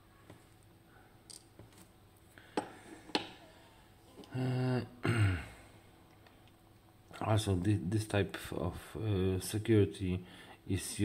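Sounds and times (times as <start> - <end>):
man grunting: 4.3 - 5.6
man humming: 4.3 - 5.6.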